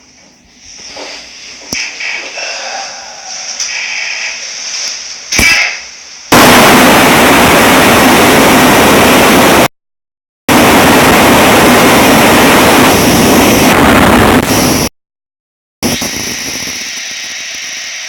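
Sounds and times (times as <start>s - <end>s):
loud harsh hiss: 0.6s - 9.7s.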